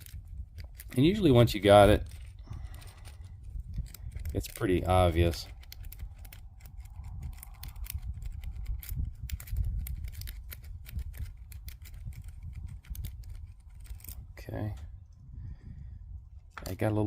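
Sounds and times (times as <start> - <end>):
lock pick metallic clicks: 0.0 - 1.0, 2.0 - 4.6, 5.5 - 14.2.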